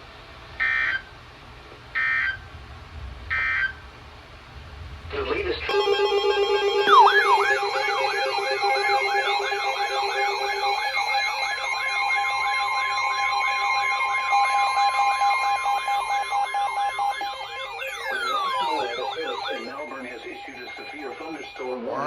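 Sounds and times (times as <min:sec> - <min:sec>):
lower steady tone: 0:02.3 - 0:21.9
warbling siren-like tone: 0:05.1 - 0:22.0
tone sliding downward: 0:05.4 - 0:22.0
two-note attention signal: 0:05.7 - 0:21.7.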